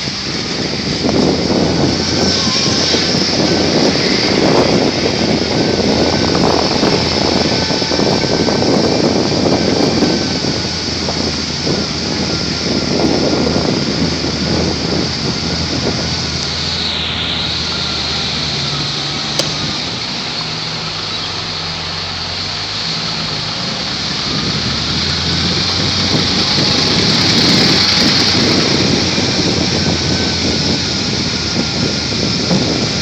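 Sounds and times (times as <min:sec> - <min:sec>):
road and wind noise: 0:00.0 - 0:33.0
vehicle engine hum: 0:00.0 - 0:33.0
sharp click: 0:19.4 - 0:19.6.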